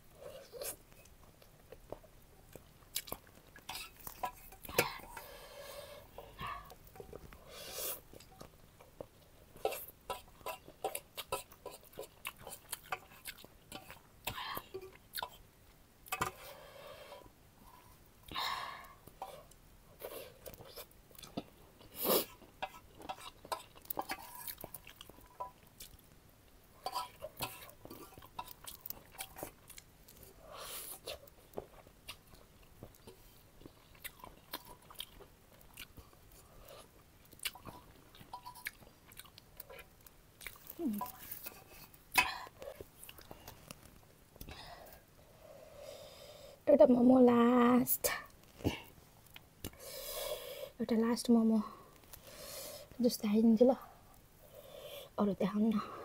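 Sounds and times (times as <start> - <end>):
person chewing food: 0.1 - 45.4.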